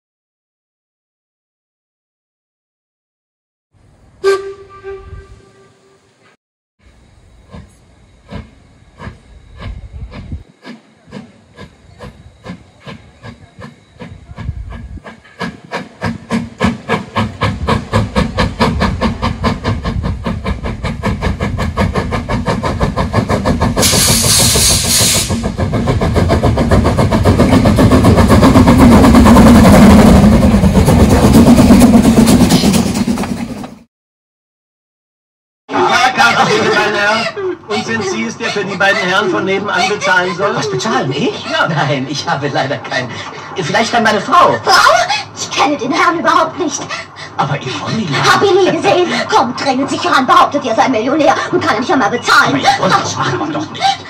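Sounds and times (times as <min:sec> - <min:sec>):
steam locomotive exhaust chuffs: 0:06.8 - 0:33.9
hissing steam: 0:07.5 - 0:29.3.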